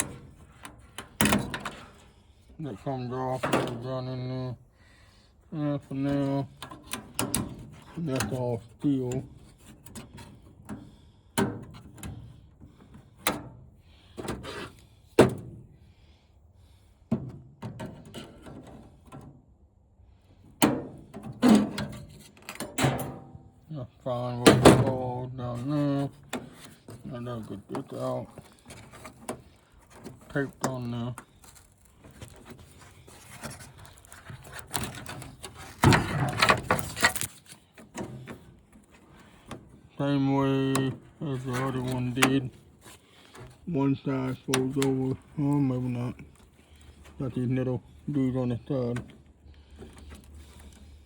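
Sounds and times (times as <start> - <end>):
knocks and clunks of parts: 0.0 - 2.2, 6.2 - 8.4, 9.1 - 14.6, 15.2 - 15.7, 17.0 - 19.6, 20.4 - 23.5, 24.3 - 25.1, 25.7 - 39.9
scraping and rubbing: 25.6 - 39.8.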